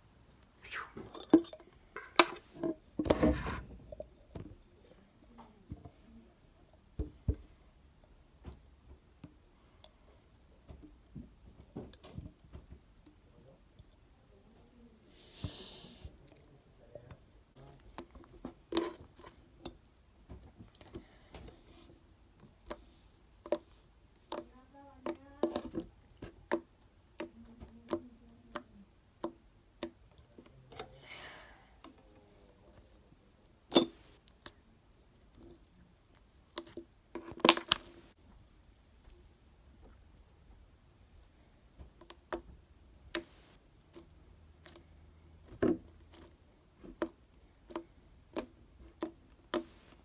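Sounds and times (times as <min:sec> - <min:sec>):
hissy rustle: 0:15.0 - 0:16.4
slime squishing with wet pops: 0:22.3 - 0:30.3, 0:31.8 - 0:38.2, 0:41.1 - 0:50.0.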